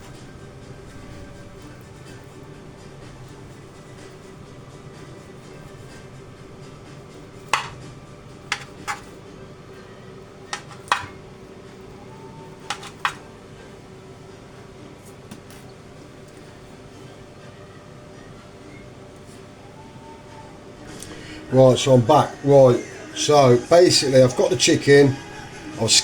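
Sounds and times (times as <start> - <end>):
knife knocking on surface: 7.5 - 7.8, 8.5 - 9.0, 10.5 - 11.2, 12.7 - 13.2.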